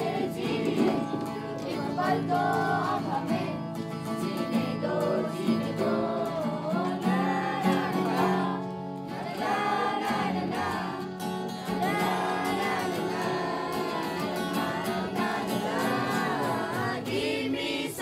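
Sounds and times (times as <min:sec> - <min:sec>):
people singing: 0:00.0 - 0:18.0
strummed acoustic guitar: 0:00.0 - 0:18.0.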